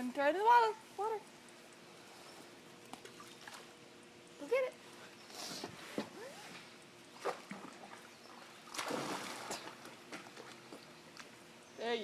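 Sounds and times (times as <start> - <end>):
dog splashing through water: 8.7 - 10.5.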